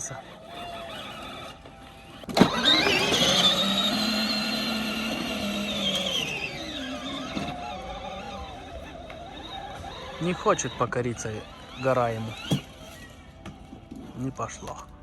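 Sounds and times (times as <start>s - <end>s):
motor click: 0.0s - 13.5s
electric motor whining: 0.0s - 15.0s.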